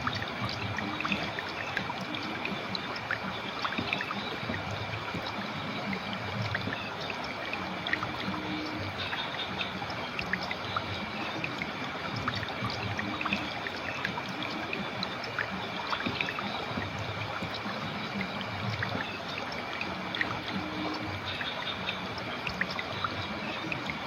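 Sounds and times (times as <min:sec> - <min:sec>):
river water flowing: 0:00.0 - 0:24.0
small splashes and drips: 0:00.0 - 0:24.0.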